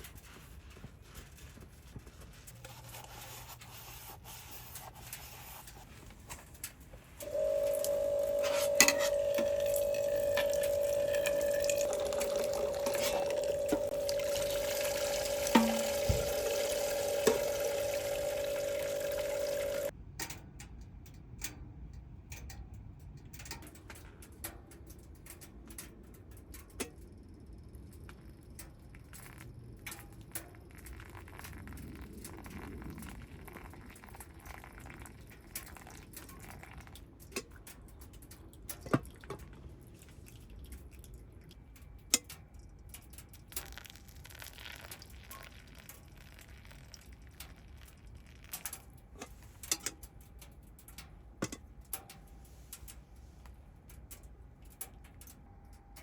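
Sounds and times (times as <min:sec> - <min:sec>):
pump motor whine: 0:07.2 - 0:19.9
water running from tap: 0:07.2 - 0:19.9.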